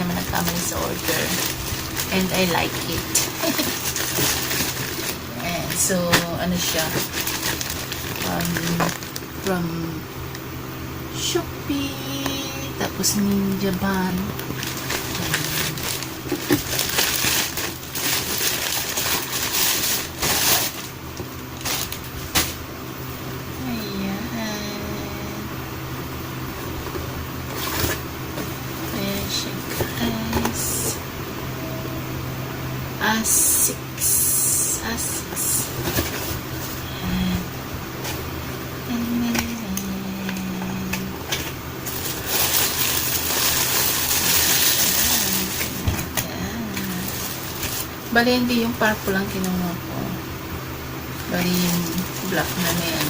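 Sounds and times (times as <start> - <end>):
packaging crinkling and rustling: 0.0 - 9.5, 14.2 - 22.6, 26.8 - 28.6, 35.7 - 36.8, 41.2 - 48.0, 51.2 - 53.0
steady low hum: 0.0 - 53.0
steady low tone: 28.1 - 41.8.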